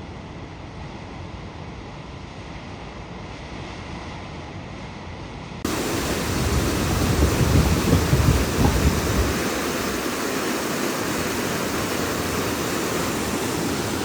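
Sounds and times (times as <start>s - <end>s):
waterfall rushing water: 5.7s - 14.0s.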